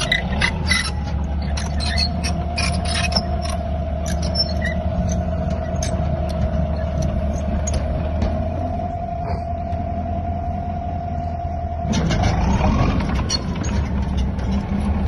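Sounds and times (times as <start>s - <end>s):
sharp creaks and clicks: 0.0s - 8.4s, 12.0s - 15.0s
constant whine: 0.0s - 15.0s
drilling rig engine running: 0.0s - 15.0s.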